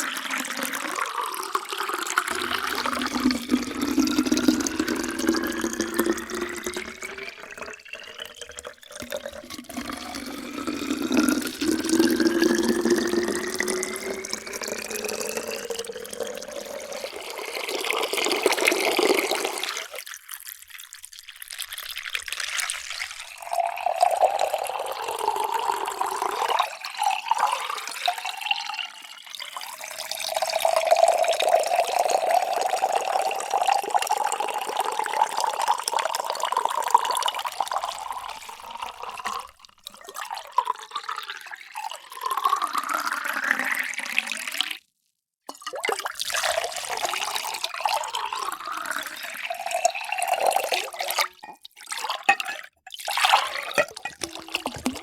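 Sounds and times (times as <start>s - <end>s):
water pouring into a container: 0.0s - 55.0s.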